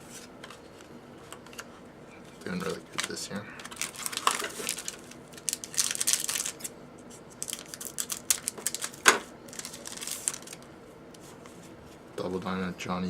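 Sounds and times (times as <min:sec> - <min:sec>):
cards being handled: 0:02.5 - 0:11.6
wrapper crinkling: 0:02.6 - 0:06.7, 0:07.3 - 0:10.7.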